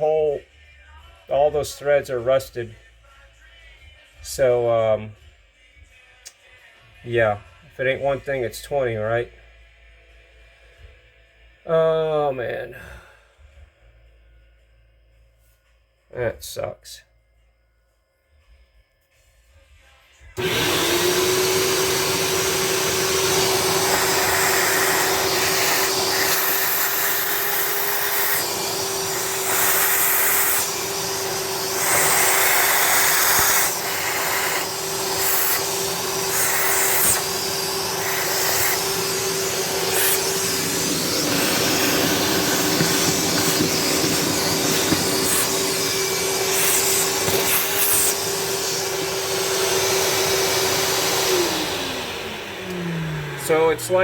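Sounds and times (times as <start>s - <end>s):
vacuum cleaner running: 20.4s - 54.0s.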